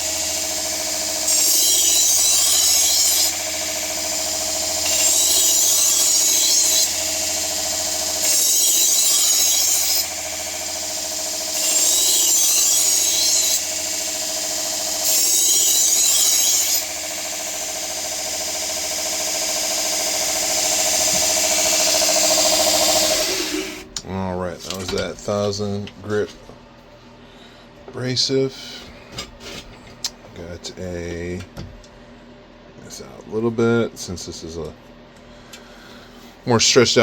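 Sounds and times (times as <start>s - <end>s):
belt grinder motor whine: 0.0s - 24.0s
knife blade grinding on belt: 1.2s - 3.7s, 4.8s - 10.4s, 11.5s - 14.0s, 15.0s - 17.0s.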